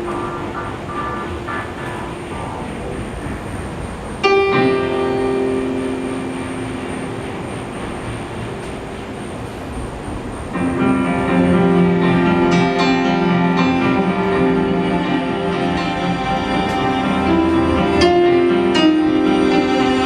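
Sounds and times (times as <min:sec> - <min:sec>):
steady hiss: 0:00.0 - 0:20.0
synth chords: 0:00.0 - 0:20.0.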